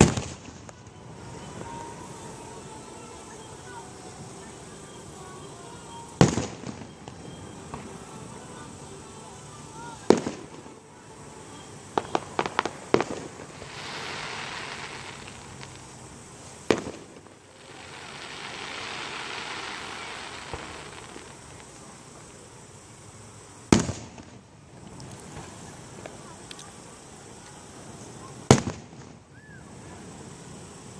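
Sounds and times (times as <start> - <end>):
firework pops: 0.0 - 1.0, 6.1 - 8.0, 10.0 - 10.8, 11.9 - 22.5, 23.7 - 26.8, 27.4 - 29.3
fireworks shells bursting: 0.0 - 26.8
firework hiss: 0.0 - 30.9.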